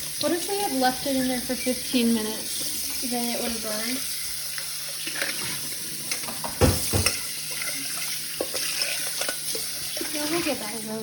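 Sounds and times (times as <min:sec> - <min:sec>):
tap water running into sink: 0:00.0 - 0:11.0
sharp knocks: 0:06.4 - 0:07.2.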